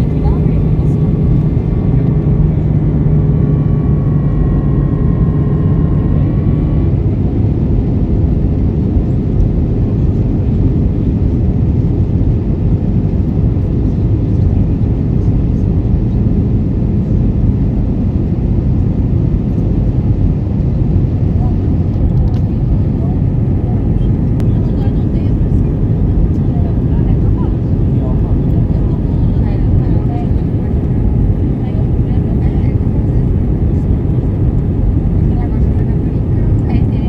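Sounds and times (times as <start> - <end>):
airplane cabin roar: 0.0 - 37.0.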